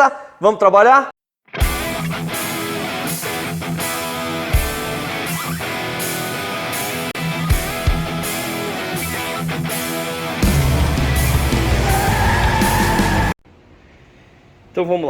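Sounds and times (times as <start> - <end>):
steady drum beat: 1.6 - 5.4, 7.2 - 9.1, 10.4 - 13.4
distorted electric guitar: 1.6 - 13.4.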